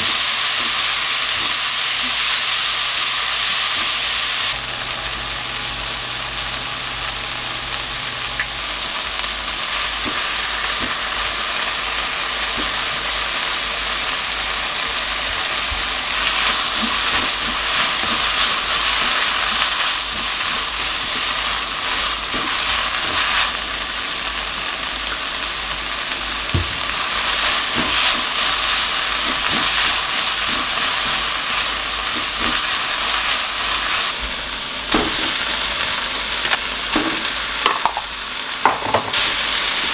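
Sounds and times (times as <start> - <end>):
food sizzling in a pan: 0.0 - 39.9
utensil stirring and tapping pan: 26.5 - 34.2, 36.4 - 39.2.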